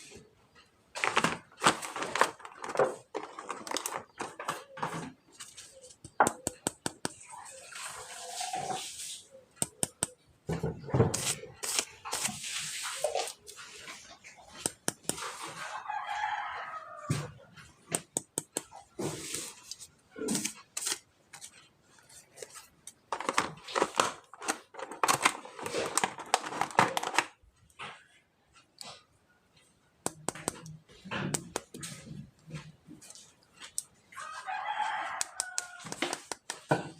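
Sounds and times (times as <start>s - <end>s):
plastic packaging crackling and tearing: 0.9s - 5.0s, 20.2s - 21.6s, 22.3s - 27.4s, 35.2s - 36.7s
rooster crowing: 15.6s - 17.4s, 34.2s - 36.1s.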